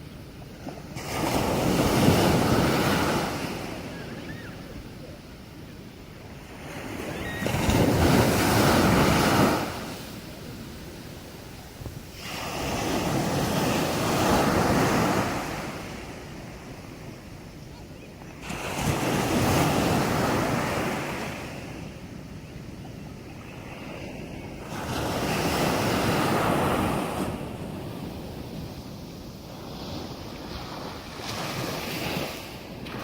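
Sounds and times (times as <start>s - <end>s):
sea waves breaking: 0.0s - 17.2s.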